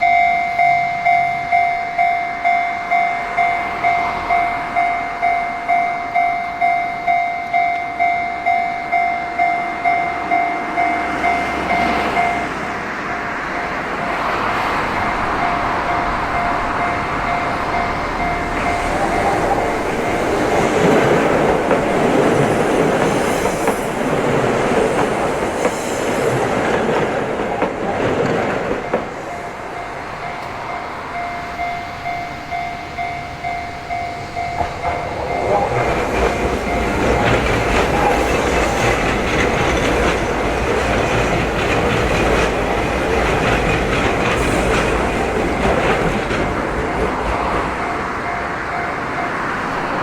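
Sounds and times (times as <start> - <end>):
level crossing bell ringing: 0.0 - 12.7, 15.0 - 22.4, 28.9 - 41.4
train wheels clattering on rails: 0.0 - 50.0.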